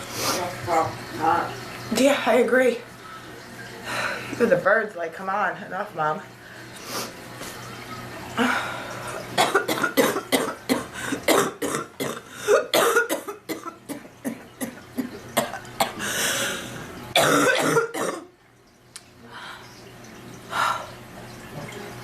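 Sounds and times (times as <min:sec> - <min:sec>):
noisy in-breath: 0:03.8 - 0:04.4, 0:16.0 - 0:16.8
woman coughing: 0:09.4 - 0:16.0, 0:17.2 - 0:18.3.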